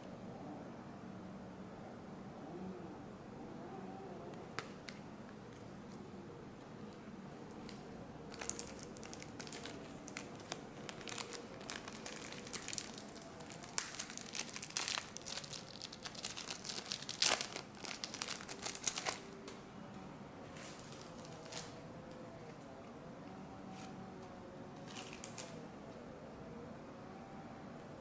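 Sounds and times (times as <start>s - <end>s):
plastic wrapper crinkling and tearing: 7.7s - 19.4s, 20.6s - 21.8s, 24.9s - 25.6s.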